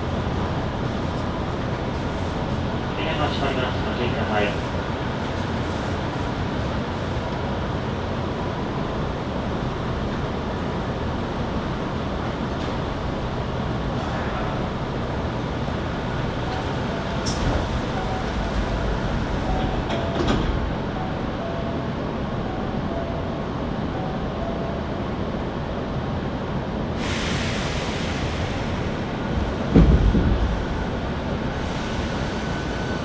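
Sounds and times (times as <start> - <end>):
train wheels rumbling on rail: 0.0 - 33.0
heavy thump: 29.7 - 30.9.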